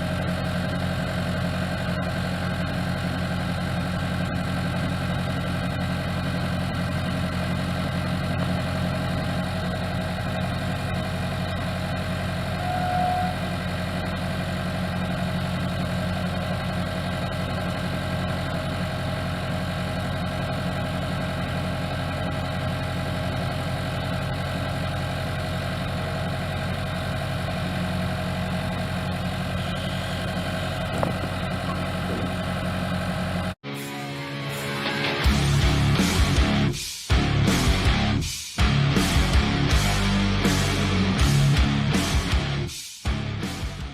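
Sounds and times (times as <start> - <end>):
skid steer engine idling: 0.0 - 33.6, 35.2 - 43.9
brief higher tone: 12.5 - 13.5.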